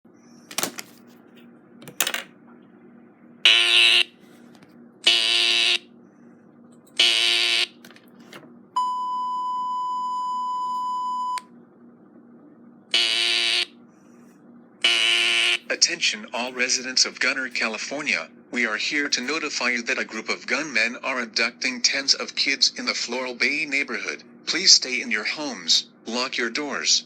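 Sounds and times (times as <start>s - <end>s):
faint low hum: 0.1s - 27.0s
steady single-pitch alert tone: 14.8s - 15.7s.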